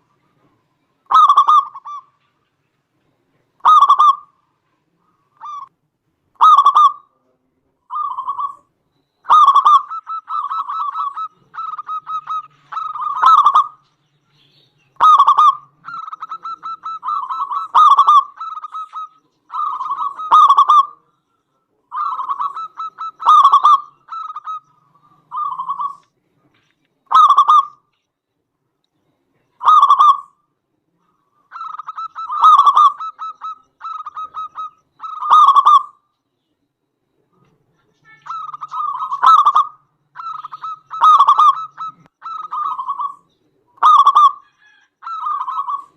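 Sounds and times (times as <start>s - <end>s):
dove cooing and trilling: 1.1s - 2.2s, 3.6s - 4.3s, 6.4s - 7.1s, 7.9s - 13.8s, 15.0s - 21.1s, 21.9s - 26.1s, 27.1s - 27.8s, 29.6s - 30.4s, 31.3s - 36.0s, 38.2s - 45.9s.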